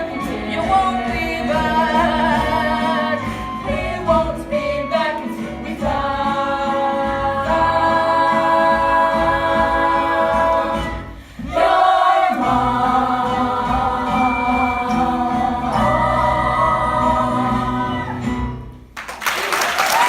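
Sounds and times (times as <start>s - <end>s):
cast singing held chords: 0.0s - 18.5s
audience applause: 19.0s - 20.0s.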